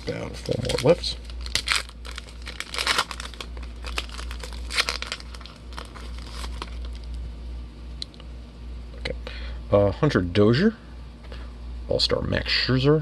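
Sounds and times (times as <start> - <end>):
foil wrapper crinkling: 0.0 - 7.2.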